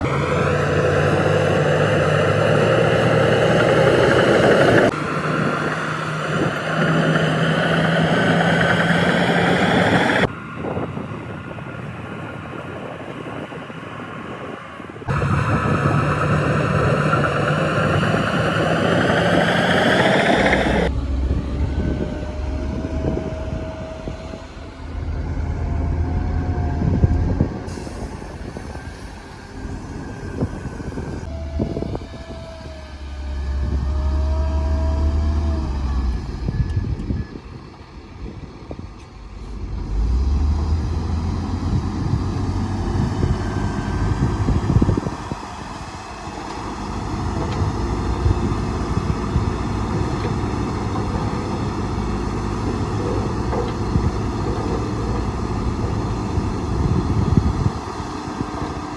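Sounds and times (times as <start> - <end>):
engine revving: 0.0 - 11.1, 15.0 - 28.9, 39.5 - 58.9
heavy engines labouring: 0.0 - 58.9.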